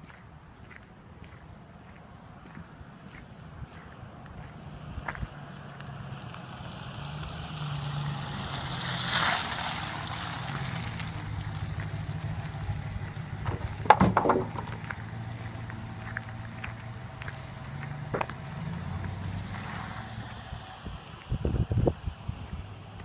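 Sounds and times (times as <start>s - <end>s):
low engine hum: 0.0s - 23.0s
clatter of knocks: 13.4s - 15.0s.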